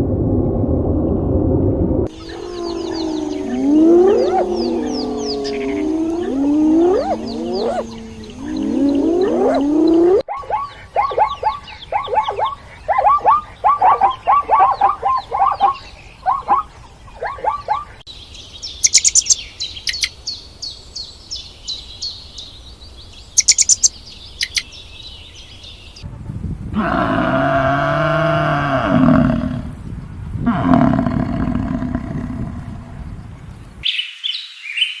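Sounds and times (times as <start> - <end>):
bird calls with downward notes: 2.1 - 18.0
high thin bird chirps: 2.1 - 18.0, 18.8 - 20.2, 23.4 - 24.8
rising animal calls: 2.1 - 18.0, 26.8 - 29.8, 30.4 - 33.2.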